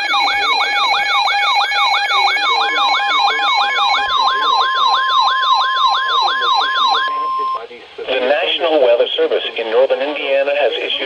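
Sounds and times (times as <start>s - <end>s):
steady beeping tones: 0.0s - 7.7s
steady warning tone: 0.0s - 7.7s.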